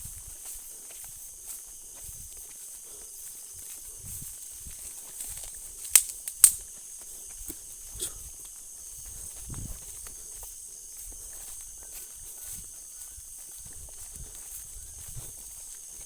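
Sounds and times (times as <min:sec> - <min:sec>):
crickets chirping: 0:00.0 - 0:16.0
sharp snaps: 0:05.8 - 0:06.7
soft footsteps: 0:06.6 - 0:16.0.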